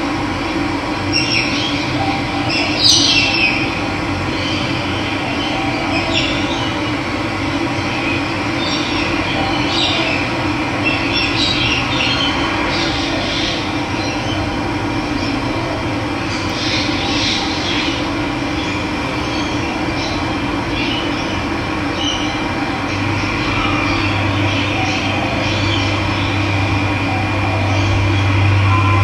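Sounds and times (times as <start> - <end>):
birds chirping: 1.1 - 7.1, 16.2 - 29.0.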